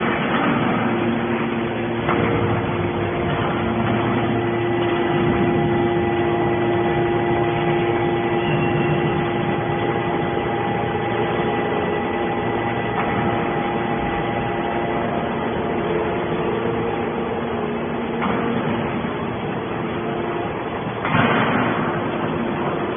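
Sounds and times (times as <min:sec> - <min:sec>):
machine hum with held tones: 0:00.0 - 0:22.9
machine knock: 0:01.9 - 0:10.7.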